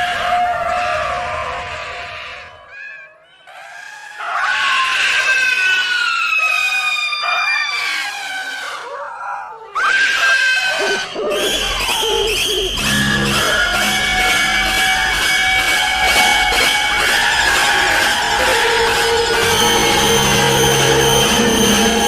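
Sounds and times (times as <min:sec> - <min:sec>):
high-pitched screams: 0:00.0 - 0:22.0
low drone music: 0:11.2 - 0:22.0.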